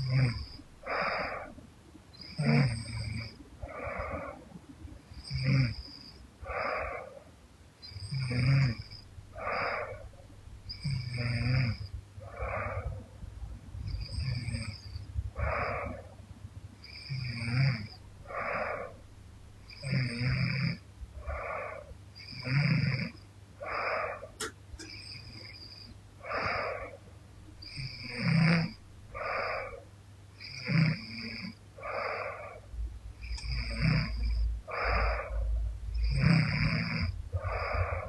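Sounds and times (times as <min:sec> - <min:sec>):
woman snoring lightly: 0:00.0 - 0:01.6, 0:02.2 - 0:04.4, 0:08.0 - 0:10.2, 0:10.8 - 0:13.0, 0:16.9 - 0:19.0, 0:19.7 - 0:27.0, 0:27.6 - 0:29.8, 0:30.4 - 0:38.0
sharp click: 0:24.4 - 0:25.0.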